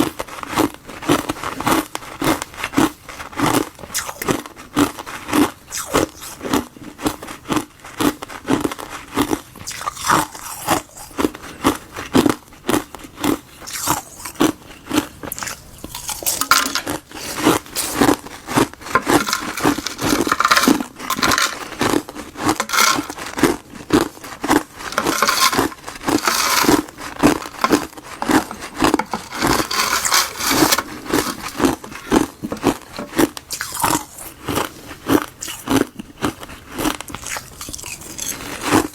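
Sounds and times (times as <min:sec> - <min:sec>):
ice being crunched: 0:15.4 - 0:34.2.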